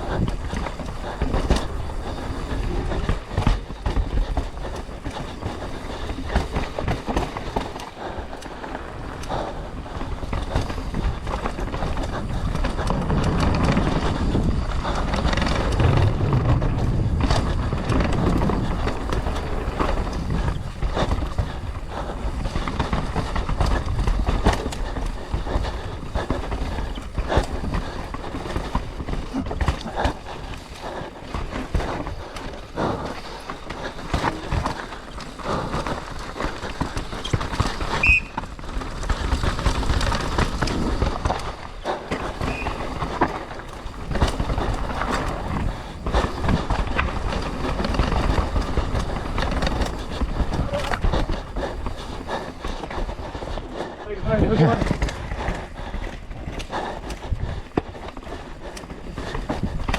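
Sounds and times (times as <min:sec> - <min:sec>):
mountain bike rattling over rocks: 0:00.0 - 0:59.9
wind on microphone: 0:10.7 - 0:25.0.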